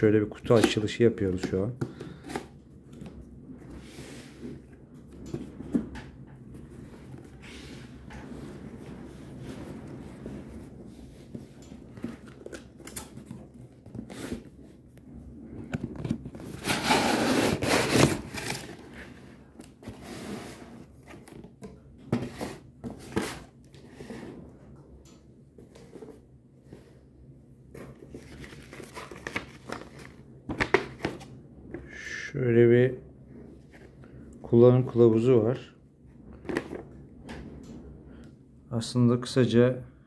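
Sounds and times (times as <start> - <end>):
cardboard tearing: 16.5 - 18.8.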